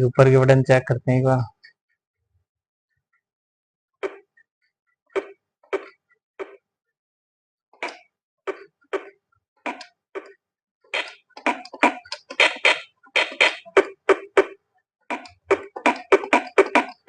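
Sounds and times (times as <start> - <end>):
toy keyboard sound samples: 11.0 - 14.4.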